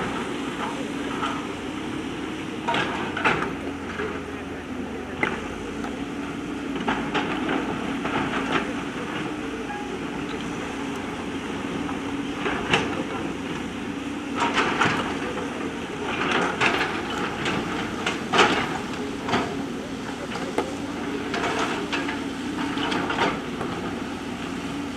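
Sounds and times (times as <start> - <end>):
diesel engine running: 0.0 - 24.9.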